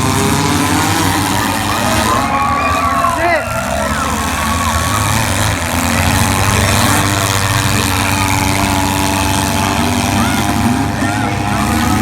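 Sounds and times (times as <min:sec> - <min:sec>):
car engines running loud: 0:00.0 - 0:12.0.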